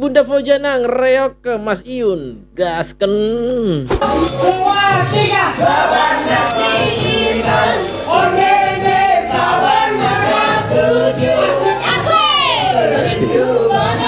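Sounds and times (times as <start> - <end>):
backing track: 4.0 - 14.0
woman singing in high voice: 4.0 - 14.0.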